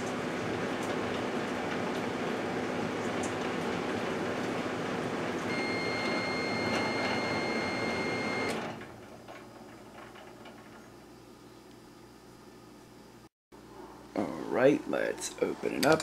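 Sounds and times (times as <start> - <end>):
microwave shutting off click: 0.0 - 10.3
microwave oven humming: 0.0 - 14.3
high steady tone: 5.5 - 8.6.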